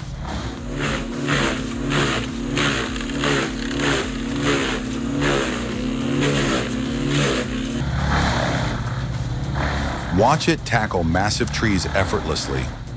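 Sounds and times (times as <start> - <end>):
brush chipper running under load: 0.3 - 7.8.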